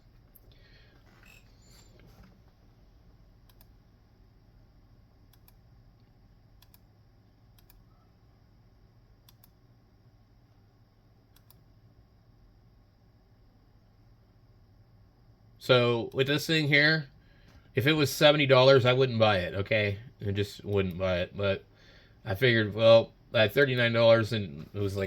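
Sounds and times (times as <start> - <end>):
low room hum: 0.0 - 25.0
computer mouse clicks: 3.4 - 3.8, 5.3 - 5.6, 6.6 - 6.9, 7.5 - 7.9, 9.2 - 9.6, 11.3 - 11.7.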